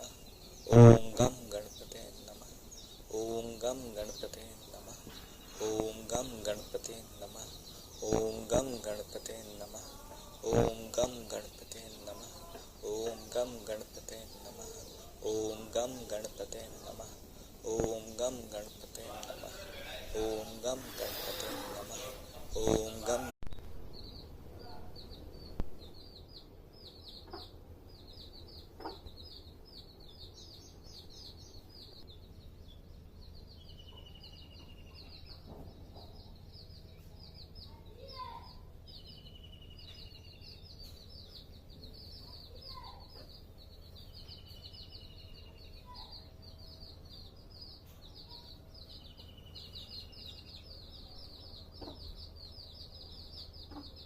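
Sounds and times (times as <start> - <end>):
hen clucking: 0.0 - 23.3
chicks peeping: 0.0 - 54.0.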